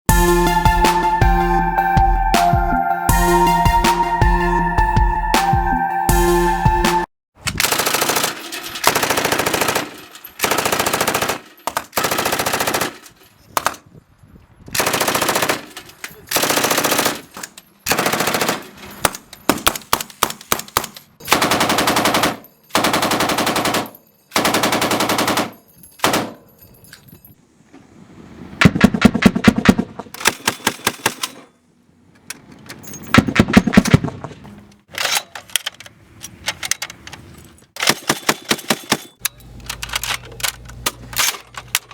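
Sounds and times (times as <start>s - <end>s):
automatic gunfire bursts: 7.6s - 13.0s, 14.8s - 15.7s, 16.4s - 17.2s, 17.9s - 18.7s, 21.2s - 26.3s.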